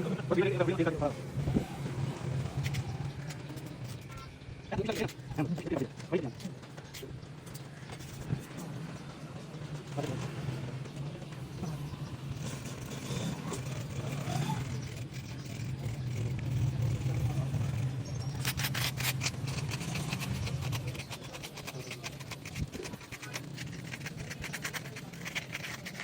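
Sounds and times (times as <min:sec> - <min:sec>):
rapid crackling: 0:11.8 - 0:26.0.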